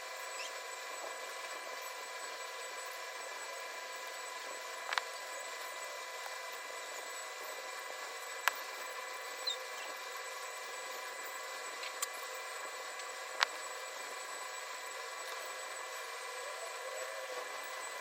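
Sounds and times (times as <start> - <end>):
small electric motor whining: 0.0 - 18.0.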